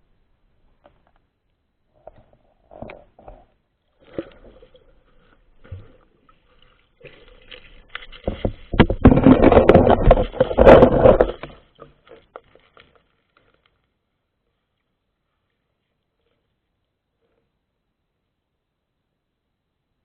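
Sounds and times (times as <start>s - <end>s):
faint scrapes and knocks: 1.9s - 13.8s
water sloshing and splashing: 2.7s - 13.7s.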